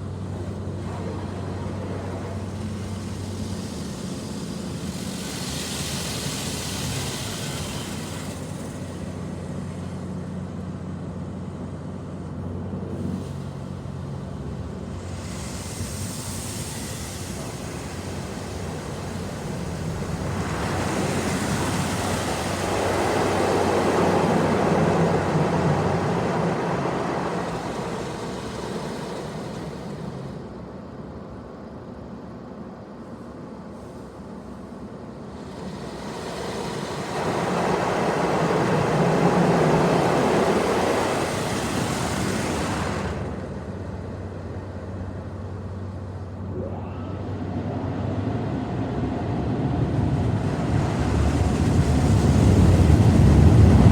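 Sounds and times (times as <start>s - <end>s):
rush of water: 0.0s - 9.9s, 13.0s - 30.7s, 34.8s - 53.9s
car wash machine hum: 0.0s - 31.4s, 32.0s - 53.9s
hissing spray: 14.7s - 24.5s.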